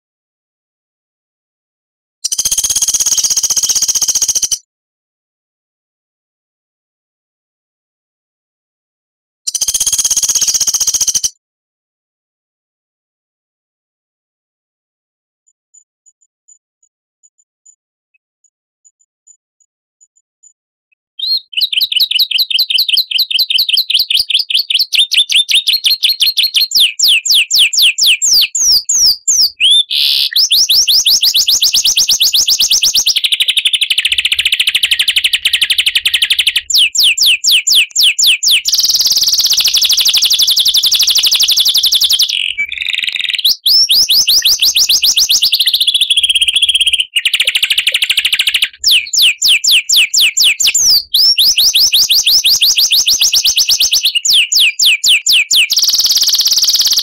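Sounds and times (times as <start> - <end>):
songbird singing trills: 21.2 - 57.0.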